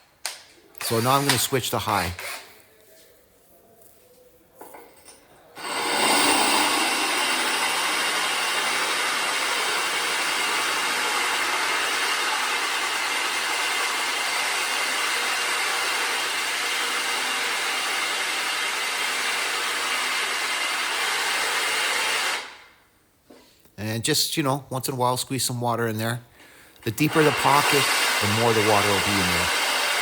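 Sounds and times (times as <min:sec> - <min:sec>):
drill grinding into stone: 0:00.8 - 0:02.4, 0:05.6 - 0:22.6, 0:27.0 - 0:30.0.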